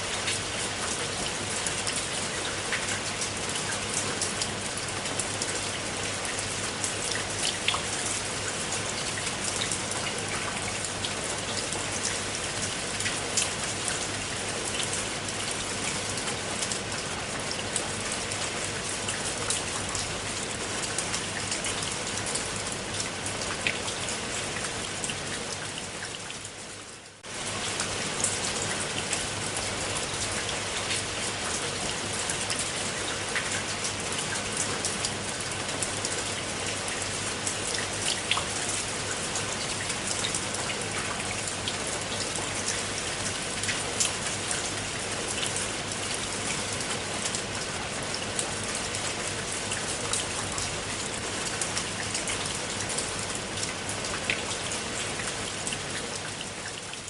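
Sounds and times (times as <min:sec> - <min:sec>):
rain falling on water: 0:00.0 - 0:57.0.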